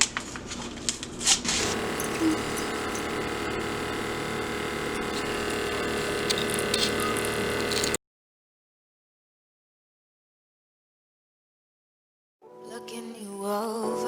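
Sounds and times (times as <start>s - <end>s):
small electric motor humming: 1.6s - 8.0s.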